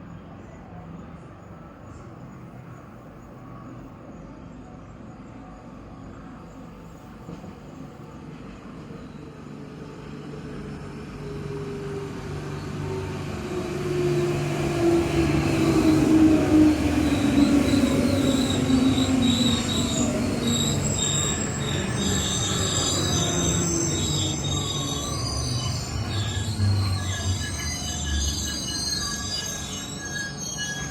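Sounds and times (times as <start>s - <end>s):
electric train approaching: 5.7s - 30.9s
high wavering wheel squeal: 11.4s - 30.9s.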